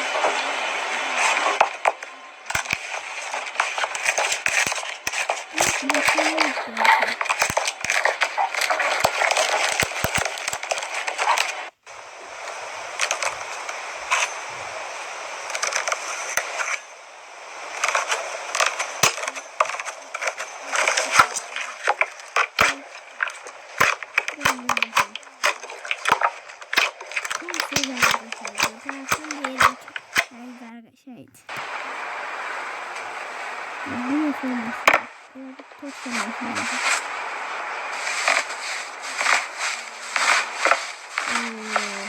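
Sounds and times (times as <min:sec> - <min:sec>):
slime crackling and popping: 0:02.5 - 0:11.6, 0:17.8 - 0:30.6, 0:37.9 - 0:42.0.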